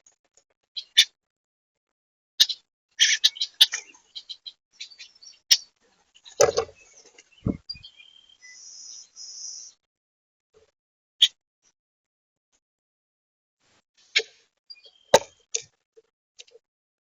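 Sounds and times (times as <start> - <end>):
small birds chirping: 0.8 - 1.2, 2.4 - 9.8, 14.0 - 15.7
dull thump: 6.4 - 6.8.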